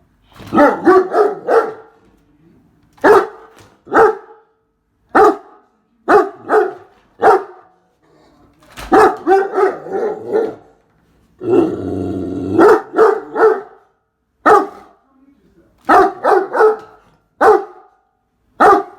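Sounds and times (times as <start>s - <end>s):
dog barking deeply: 0.5s - 1.9s, 3.0s - 4.5s, 5.1s - 7.7s, 8.9s - 10.7s, 11.4s - 13.8s, 14.4s - 15.0s, 15.9s - 18.0s, 18.6s - 18.9s
dog growling: 9.7s - 10.7s, 11.4s - 13.4s.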